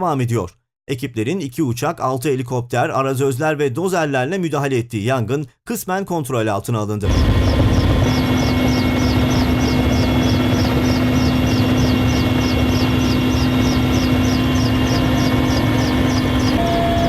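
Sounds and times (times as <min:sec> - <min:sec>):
fast high ticking: 0:07.1 - 0:17.0
helicopter engine rumble: 0:07.1 - 0:17.0.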